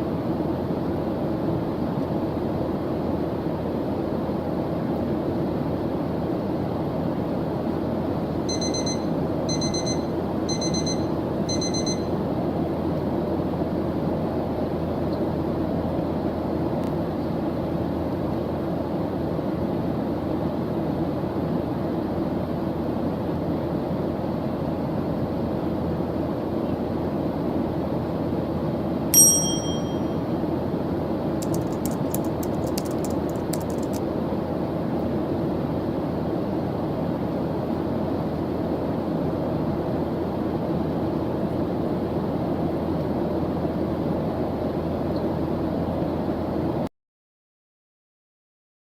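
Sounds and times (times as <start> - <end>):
steady white noise: 0.0 - 46.9
bell-like ding: 8.5 - 12.1, 29.2 - 30.2.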